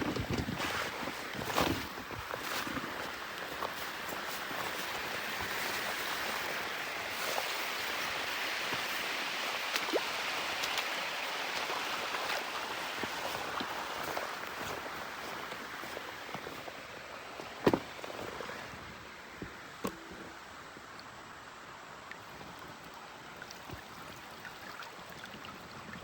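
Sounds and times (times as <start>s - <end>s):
river water rushing: 0.9s - 19.8s.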